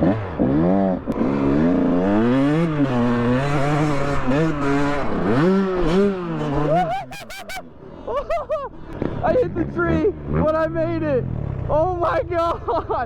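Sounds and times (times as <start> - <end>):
dirt bike engine revving: 0.0 - 12.9.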